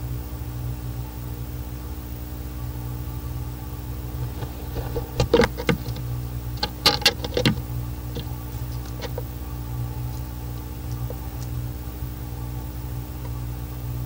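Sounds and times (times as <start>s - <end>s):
electrical hum: 0.0s - 14.0s
sharp clicks and scrapes: 4.2s - 9.3s.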